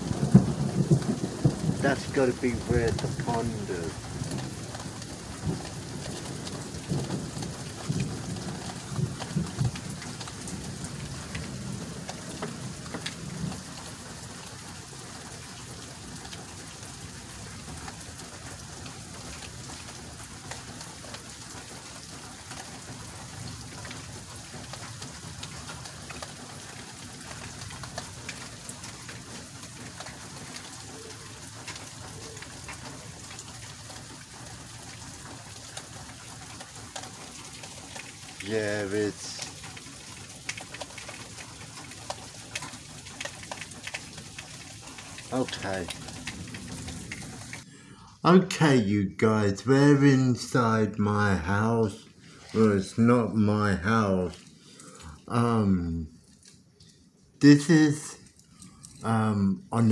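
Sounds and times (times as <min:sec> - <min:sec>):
thunder rumbling: 0:00.0 - 0:14.5, 0:37.9 - 0:47.7
steady rain hiss: 0:00.0 - 0:59.9.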